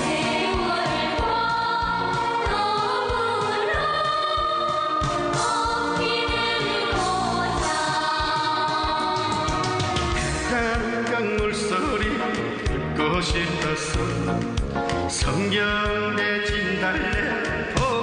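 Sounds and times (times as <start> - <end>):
steady drum beat: 0.0 - 18.0.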